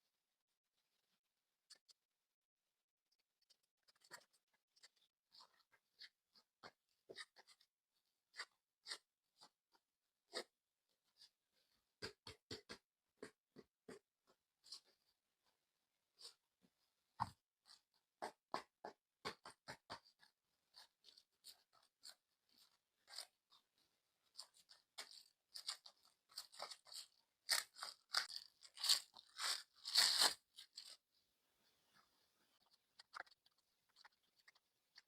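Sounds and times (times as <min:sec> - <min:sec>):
packaging crinkling: 0:25.0 - 0:31.0.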